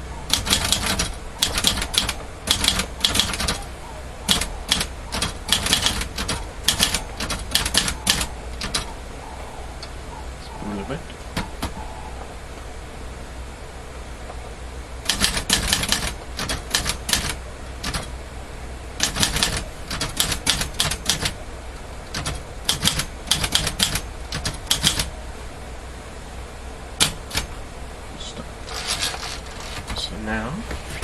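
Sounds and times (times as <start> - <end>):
manual typewriter typing: 0.3 - 3.7, 4.3 - 8.9, 15.1 - 18.1, 19.0 - 21.4, 22.1 - 25.1, 27.0 - 27.5, 28.7 - 30.1.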